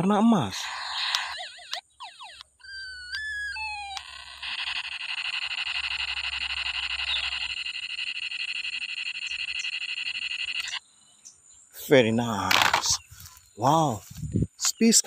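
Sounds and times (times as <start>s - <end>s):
pulsing electronic buzz: 0.2s - 11.0s
toy gun beeping tones: 0.5s - 10.8s.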